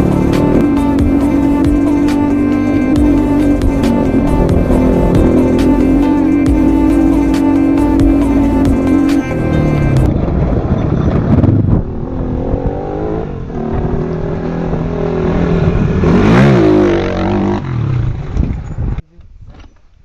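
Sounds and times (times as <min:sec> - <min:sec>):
motorcycle engine revving: 0:00.0 - 0:18.8.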